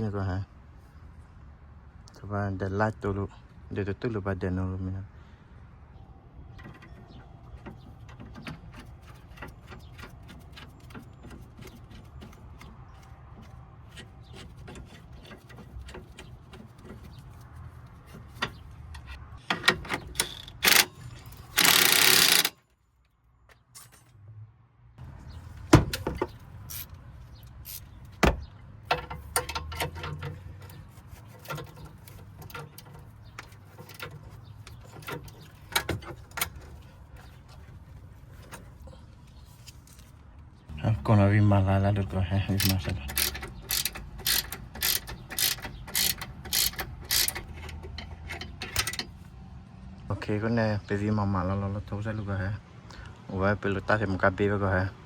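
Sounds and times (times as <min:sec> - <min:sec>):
metallic clicks and knocks: 0:06.6 - 0:22.6, 0:25.6 - 0:37.6, 0:42.5 - 0:49.3.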